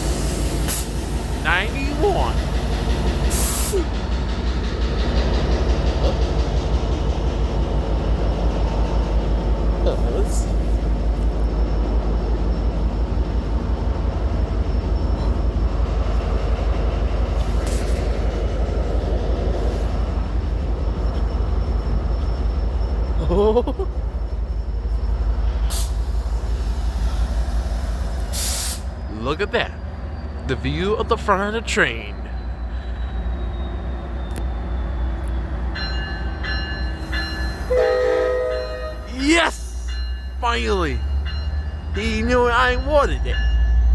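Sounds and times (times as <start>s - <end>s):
train rumbling: 0.0s - 43.9s
locomotive horn chord: 37.7s - 39.1s.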